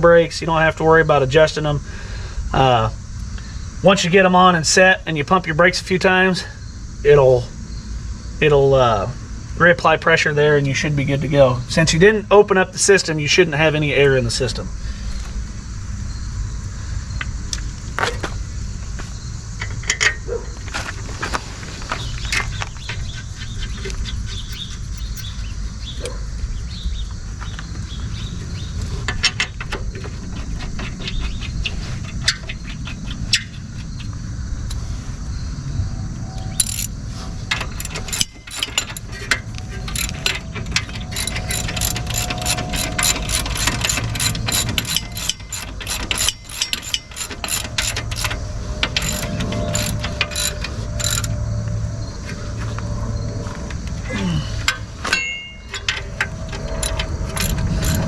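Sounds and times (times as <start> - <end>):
steady low rumble: 22.1 - 28.4, 31.5 - 58.0
ratchet wrench clicking: 24.5 - 25.4, 36.6 - 36.9, 37.5 - 51.4, 56.6 - 58.0.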